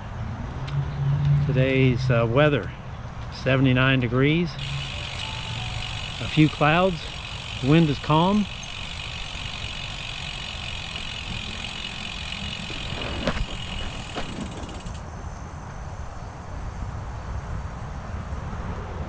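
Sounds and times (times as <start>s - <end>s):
bicycle freewheel buzzing: 4.6s - 15.1s
wind and road rumble: 5.8s - 19.0s.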